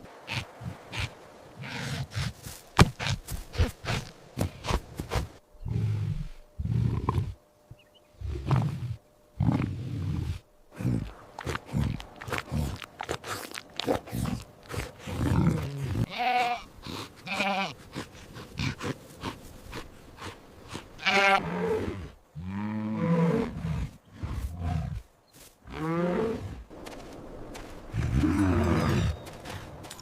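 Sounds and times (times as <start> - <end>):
animal grunting: 5.6 - 7.4, 8.2 - 25.1.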